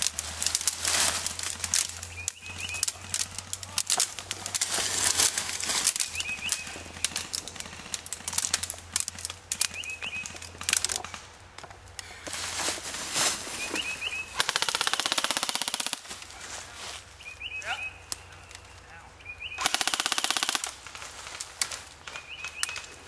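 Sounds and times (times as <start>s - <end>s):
bird chirping: 1.9s - 3.5s, 5.9s - 7.5s, 9.6s - 10.6s, 13.5s - 15.2s, 17.1s - 20.2s, 22.0s - 23.0s
airsoft guns firing: 14.3s - 16.1s, 19.6s - 21.0s.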